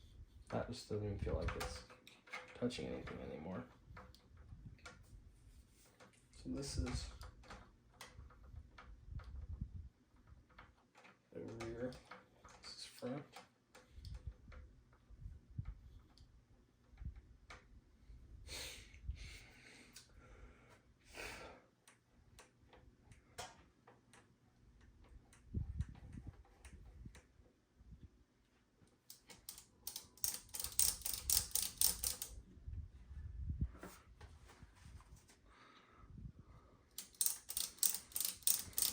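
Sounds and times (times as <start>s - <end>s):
ratcheting clicks: 29.1s - 32.4s, 37.0s - 38.9s.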